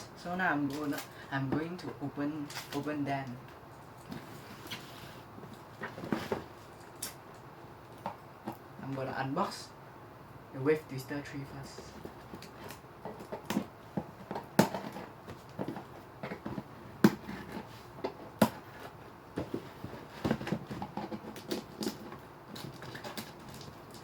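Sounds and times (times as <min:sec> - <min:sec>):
cardboard box being handled: 0:04.1 - 0:06.6, 0:11.8 - 0:23.4.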